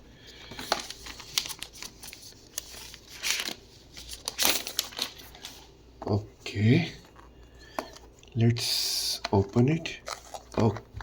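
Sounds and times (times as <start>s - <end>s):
packaging crinkling and rustling: 0.4s - 5.7s, 9.2s - 11.0s.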